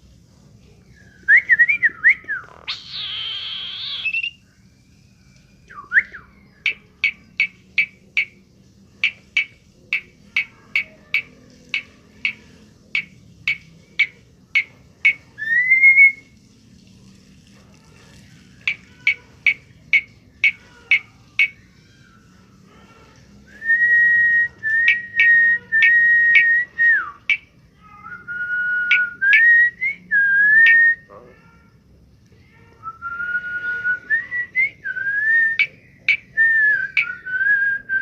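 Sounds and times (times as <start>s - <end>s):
bird whistling: 1.0s - 4.4s, 5.7s - 8.4s, 13.0s - 16.3s, 23.5s - 31.1s, 32.8s - 38.0s
harsh rasping bird call: 2.3s - 4.4s, 18.2s - 29.6s, 35.4s - 37.5s
sharp bird chirps: 2.7s - 4.4s, 35.5s - 37.3s.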